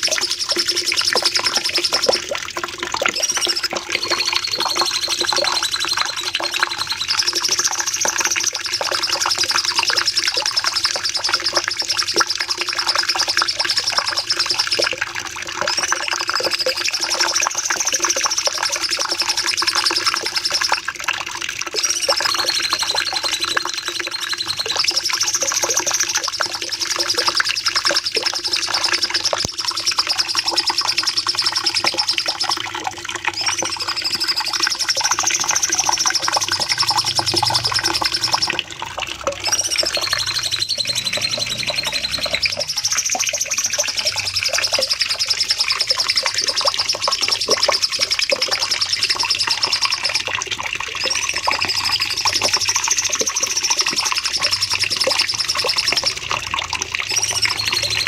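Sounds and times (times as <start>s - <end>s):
songbird rapid high trill: 33.4s - 38.8s, 39.4s - 50.2s.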